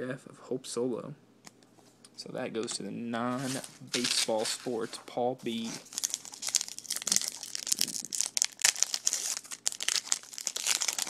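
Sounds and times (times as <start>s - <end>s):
foil wrapper tearing and crinkling: 3.9s - 4.7s, 5.8s - 11.0s.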